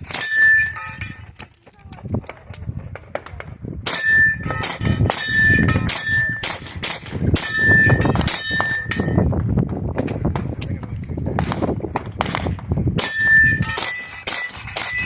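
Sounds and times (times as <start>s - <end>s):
steel plate ringing: 0.0s - 1.2s, 3.9s - 6.6s, 7.4s - 9.2s, 13.0s - 15.0s
rapid handgun shots: 2.2s - 9.1s, 11.3s - 15.0s.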